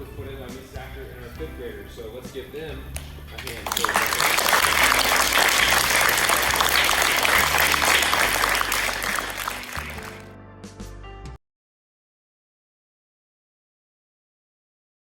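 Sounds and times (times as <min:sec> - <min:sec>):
audience applauding: 0:03.4 - 0:10.3.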